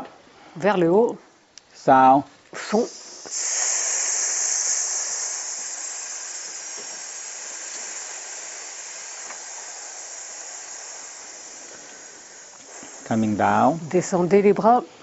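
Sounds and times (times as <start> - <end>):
long hissing exhale: 2.6 - 14.2.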